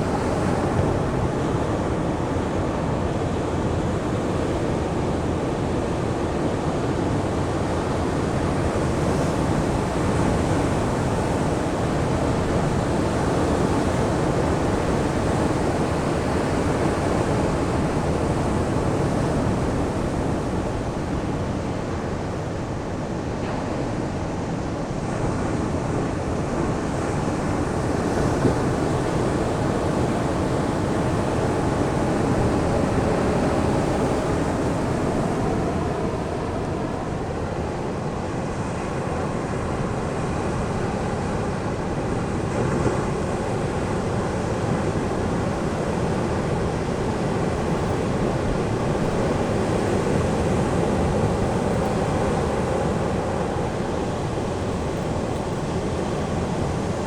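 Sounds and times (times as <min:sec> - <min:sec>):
wind rumbling on microphone: 0:27.8 - 0:57.0.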